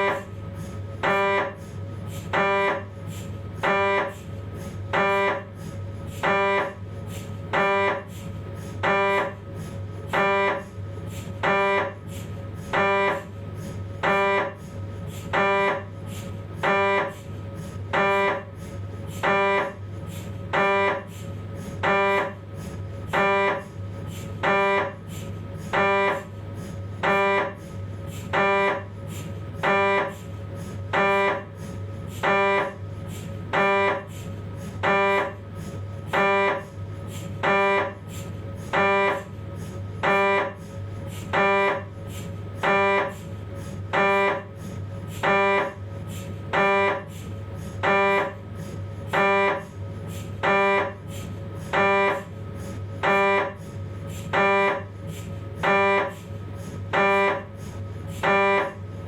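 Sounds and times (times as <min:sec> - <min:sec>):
mri scanner buzzing bursts: 0:00.0 - 0:59.0
steady low hum: 0:00.0 - 0:59.0.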